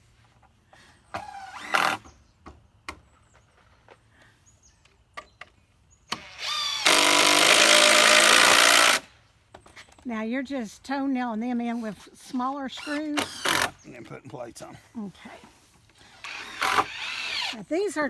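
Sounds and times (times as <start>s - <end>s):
power drill driving screws: 1.1s - 2.1s, 6.1s - 9.1s, 12.7s - 13.8s, 16.0s - 17.7s
knocks of wood and tools: 1.1s - 4.0s.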